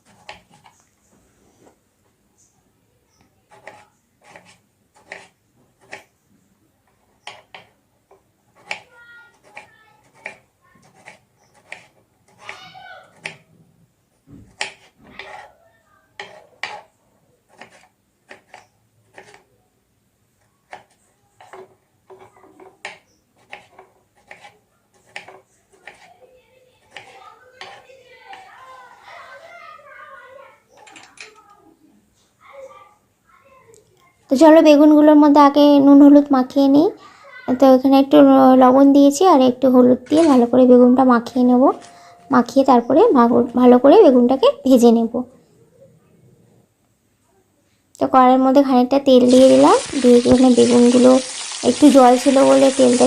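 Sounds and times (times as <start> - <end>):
knife chopping on cutting board: 9.4 - 13.4, 17.5 - 19.4, 22.8 - 26.1.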